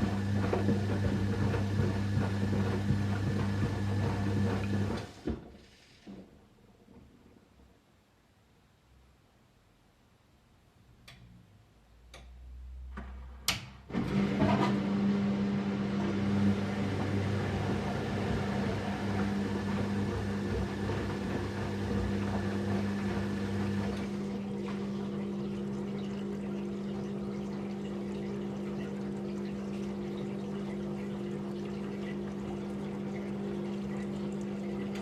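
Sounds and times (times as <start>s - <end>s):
water rushing into machine: 0.0s - 5.3s, 13.9s - 35.0s
washing machine hum: 0.0s - 6.9s, 13.8s - 35.0s.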